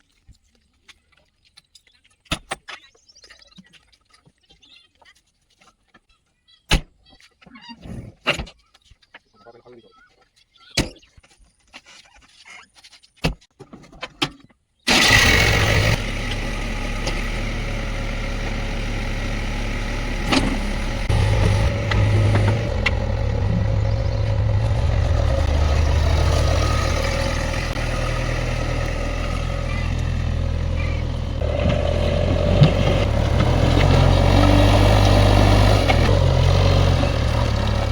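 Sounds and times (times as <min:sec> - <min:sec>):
diesel engine running: 0:14.9 - 0:37.9.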